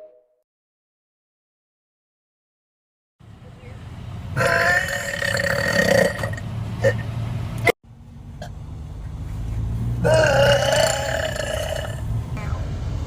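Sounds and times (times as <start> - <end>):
woman burping: 10.1 - 12.0.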